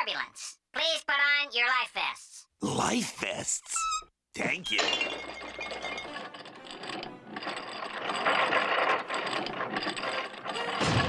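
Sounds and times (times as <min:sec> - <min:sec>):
cartoon mechanical rattling: 0:04.7 - 0:11.0.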